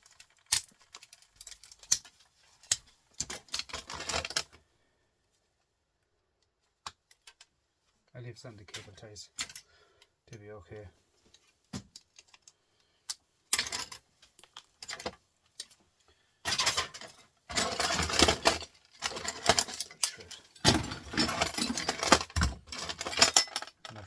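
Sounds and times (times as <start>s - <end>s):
metal and plastic pieces clattering: 0.0s - 4.6s, 8.7s - 9.7s, 13.1s - 15.8s, 16.4s - 24.0s.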